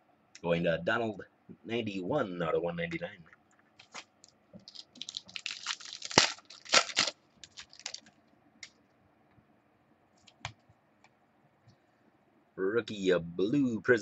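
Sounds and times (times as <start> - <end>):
rustling: 3.8 - 8.2.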